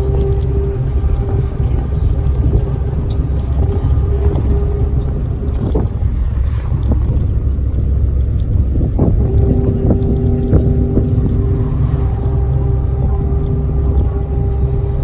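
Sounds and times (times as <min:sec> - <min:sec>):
steady pitched hum: 0:00.0 - 0:15.0
vehicle engine and road noise: 0:00.0 - 0:15.0
wind buffeting microphone: 0:00.0 - 0:15.0.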